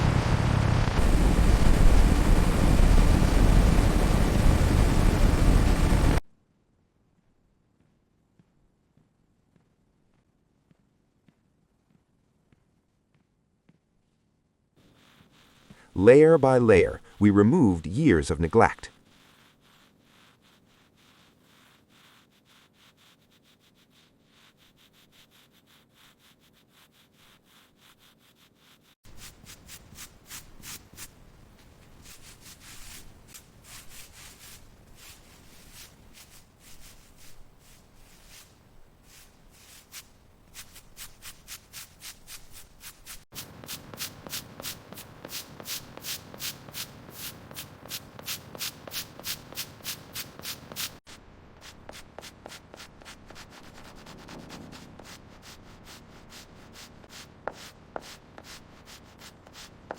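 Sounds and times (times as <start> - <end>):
hand sanding strokes: 14.8 - 15.9, 18.9 - 59.9.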